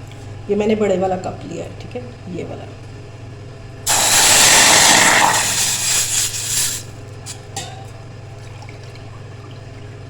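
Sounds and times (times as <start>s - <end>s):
tap water running into cup: 3.9s - 6.9s.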